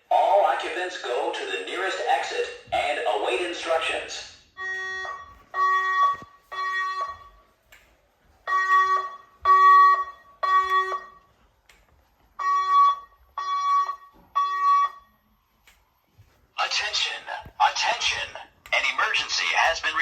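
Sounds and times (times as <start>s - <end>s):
voice evacuation announcements: 0.0s - 7.2s, 16.5s - 20.0s
buzzy alarm horn blasts: 4.6s - 7.6s, 8.4s - 11.3s, 12.4s - 15.1s.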